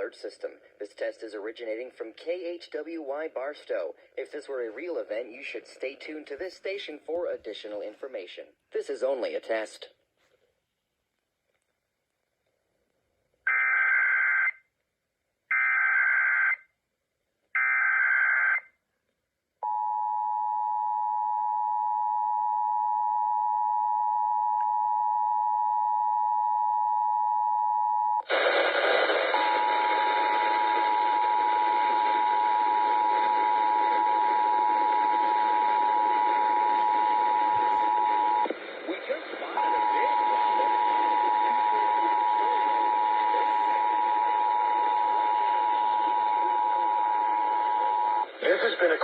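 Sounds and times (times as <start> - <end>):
static with steady tone: 24.6 - 49.0.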